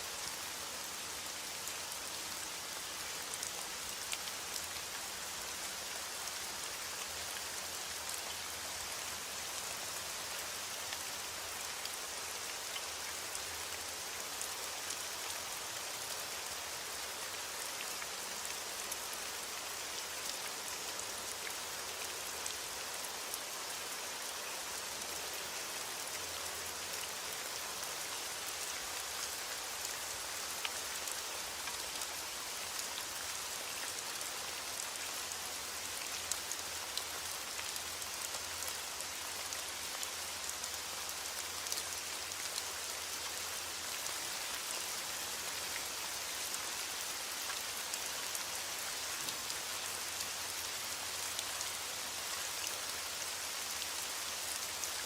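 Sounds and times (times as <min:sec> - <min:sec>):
rain pattering on a surface: 0:00.0 - 0:55.0.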